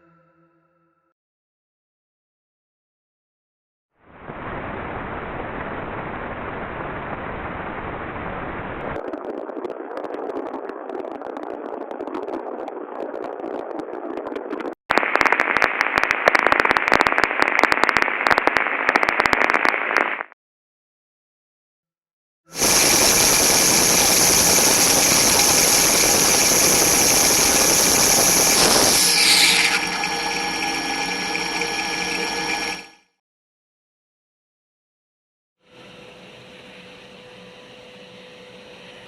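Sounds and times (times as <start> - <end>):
dense crackle: 4.2 - 20.4, 22.6 - 32.8
scattered clicks: 10.0 - 20.4.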